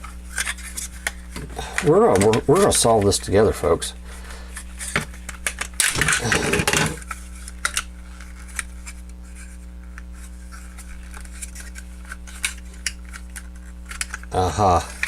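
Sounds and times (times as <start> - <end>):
steady electrical hum: 0.0 - 15.0
plastic toy parts clattering: 4.8 - 7.8.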